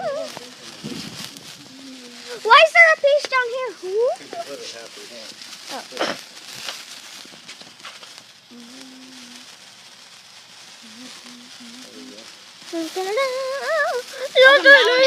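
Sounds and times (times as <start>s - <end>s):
child vocalising: 0.0s - 0.4s, 12.8s - 15.0s
sparkler fizzing: 0.0s - 15.0s.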